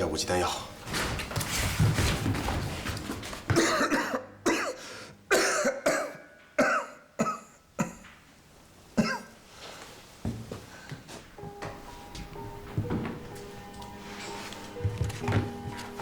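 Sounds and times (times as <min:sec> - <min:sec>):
person coughing: 0:03.5 - 0:08.1, 0:09.0 - 0:09.3.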